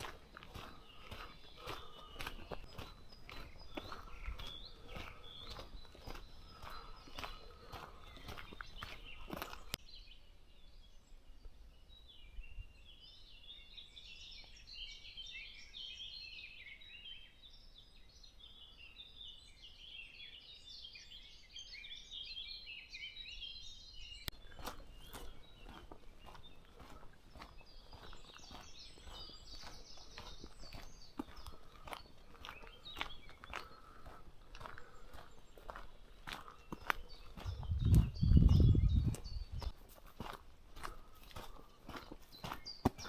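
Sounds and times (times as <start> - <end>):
footsteps on forest path: 0.0 - 10.1, 23.6 - 43.0
songbirds chirping and trilling: 0.0 - 43.0.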